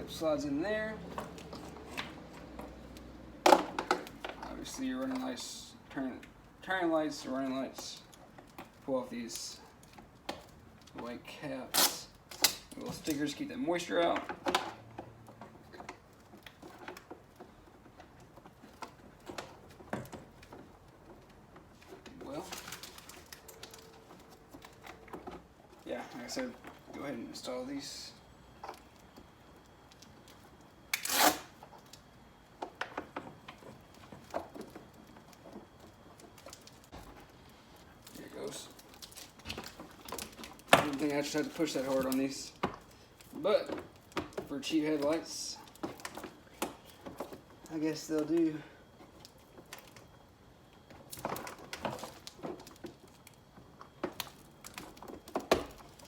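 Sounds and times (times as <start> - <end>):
plastic parts clicking and knocking: 1.1 - 5.3, 31.7 - 48.5.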